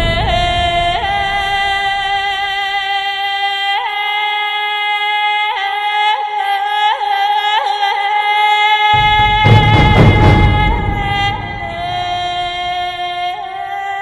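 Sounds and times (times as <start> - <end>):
eerie wailing ghost tone: 0.0 - 3.7, 9.0 - 14.0.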